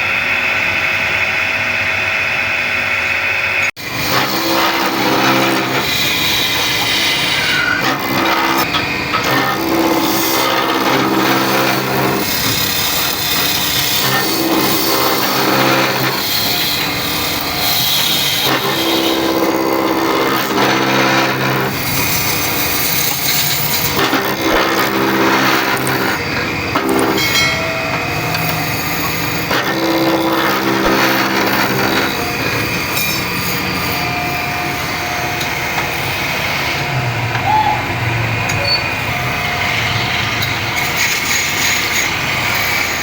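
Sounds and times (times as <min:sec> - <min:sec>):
lathe motor hum: 0:00.2 - 0:43.0
tool cutting spinning wood: 0:03.8 - 0:37.0, 0:39.4 - 0:43.0.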